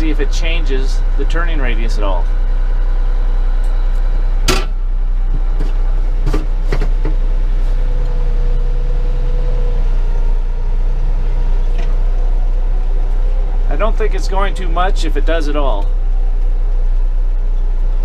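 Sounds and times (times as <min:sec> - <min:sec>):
tractor diesel engine running: 0:00.0 - 0:18.0.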